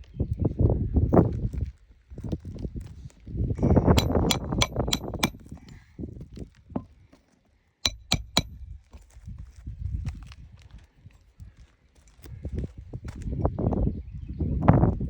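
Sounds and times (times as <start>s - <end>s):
hammer tapping nails with metallic ring: 4.0s - 5.8s, 7.9s - 8.6s.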